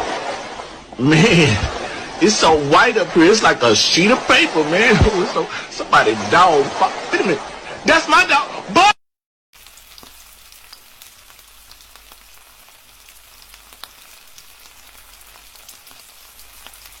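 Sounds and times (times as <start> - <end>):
crackling hiss with pops: 9.6 - 17.0.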